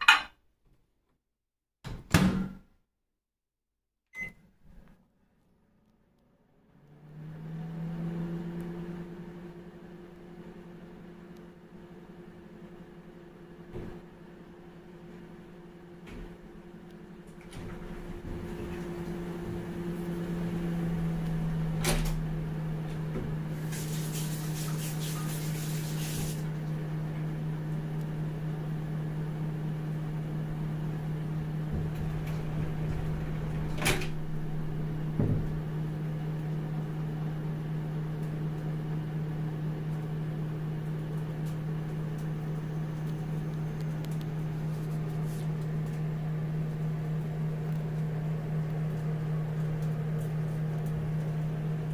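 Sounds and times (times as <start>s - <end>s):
microwave oven humming: 4.2s - 51.9s.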